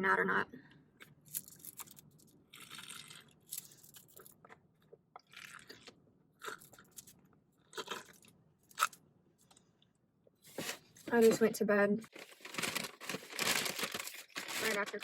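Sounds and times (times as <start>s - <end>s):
crunching and chewing food: 0.9s - 11.0s, 12.1s - 15.0s.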